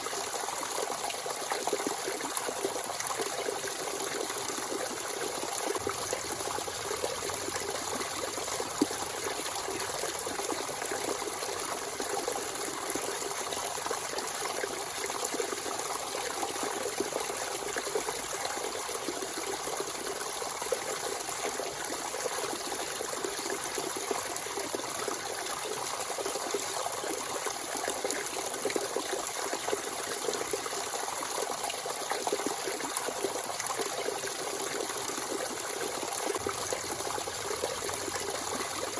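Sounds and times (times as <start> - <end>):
spring water trickling: 4.2 - 15.9, 34.6 - 38.9.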